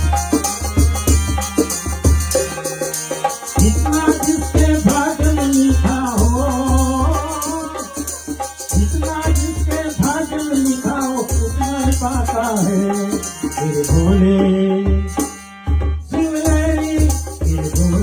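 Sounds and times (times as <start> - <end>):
hand drum beat: 0.0 - 18.0
person singing: 3.6 - 15.3, 16.1 - 18.0.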